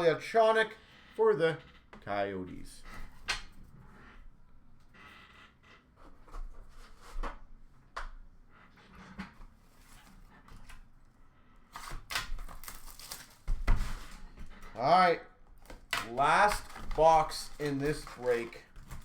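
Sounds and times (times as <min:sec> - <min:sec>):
packaging rustling: 0:11.8 - 0:14.8, 0:15.5 - 0:19.0.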